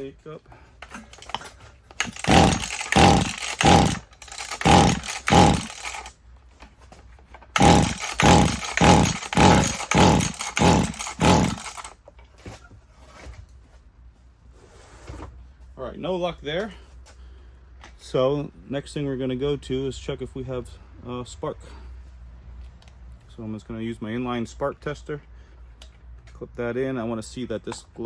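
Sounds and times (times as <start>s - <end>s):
engine pull-start cranking: 0.8s - 6.1s, 7.6s - 12.0s.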